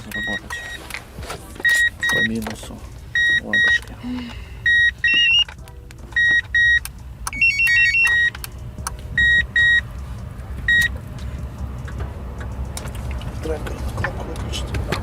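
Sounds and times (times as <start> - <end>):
car alarm beeping: 0.0 - 0.9, 1.6 - 10.0, 10.6 - 11.0
steady low rumble: 0.0 - 15.0.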